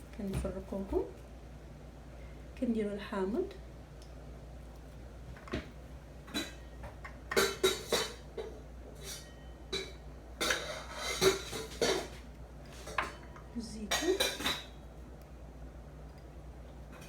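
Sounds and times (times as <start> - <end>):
utensils clinking against dish: 6.3 - 14.8.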